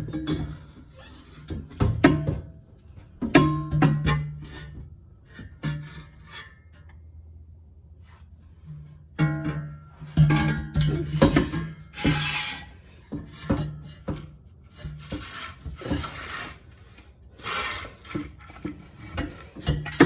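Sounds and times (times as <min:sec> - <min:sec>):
metal pipes scraping and clanking: 0:00.0 - 0:20.0.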